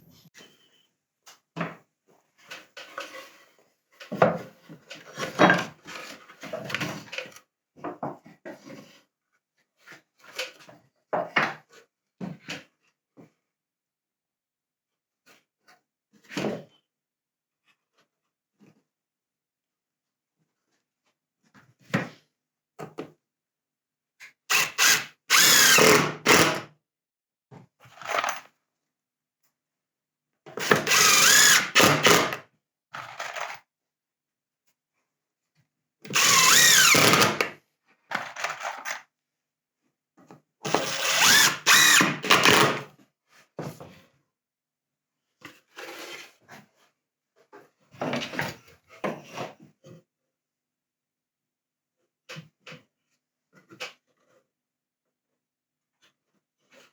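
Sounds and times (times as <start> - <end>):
impact driver driving screws: 24.5 - 26.6, 30.6 - 32.4, 36.1 - 37.5, 40.7 - 42.8.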